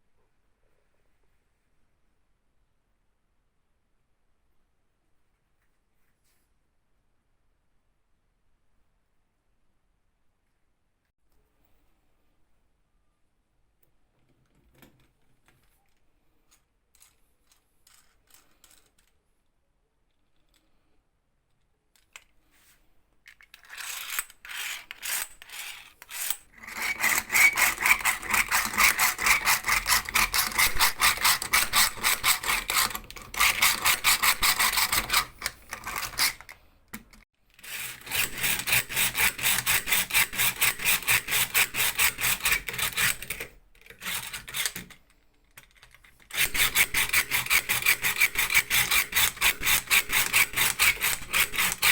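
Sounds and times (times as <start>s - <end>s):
hand drill rasping into wood: 23.6s - 36.6s, 37.6s - 45.0s, 46.2s - 51.9s.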